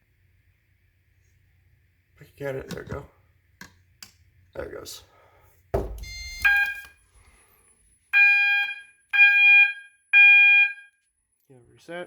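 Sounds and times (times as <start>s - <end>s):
knock: 5.8s - 6.1s
fire alarm horn blasts: 6.0s - 6.9s, 8.2s - 11.1s.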